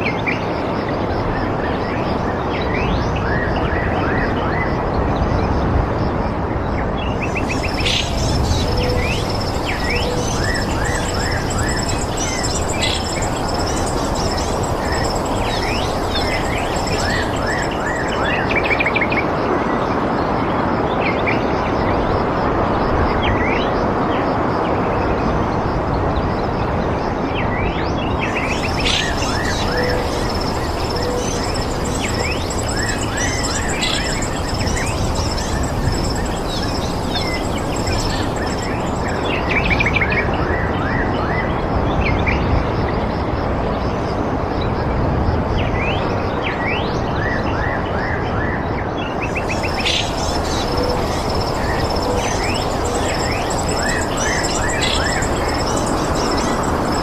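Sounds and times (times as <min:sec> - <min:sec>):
insects trilling: 0:06.9 - 0:19.4, 0:28.1 - 0:40.3, 0:49.2 - 0:57.0
steady rushing noise: 0:07.2 - 0:18.8, 0:28.2 - 0:39.8, 0:49.3 - 0:57.0
small birds chirping: 0:07.2 - 0:19.0, 0:28.2 - 0:39.9, 0:49.3 - 0:57.0.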